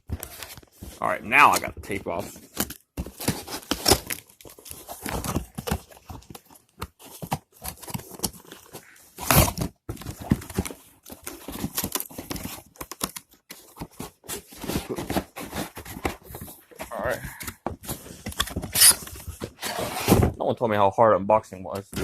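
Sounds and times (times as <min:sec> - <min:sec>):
cardboard box being torn open: 0:02.5 - 0:06.0, 0:07.1 - 0:16.2, 0:18.3 - 0:20.3.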